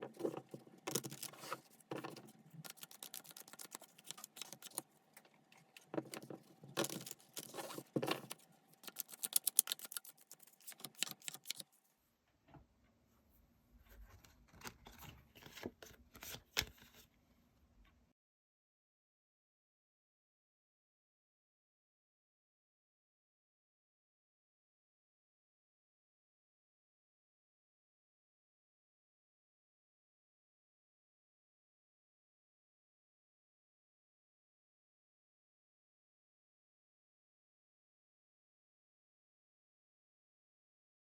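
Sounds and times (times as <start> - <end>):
cards being shuffled: 0.1 - 4.8, 5.8 - 11.6.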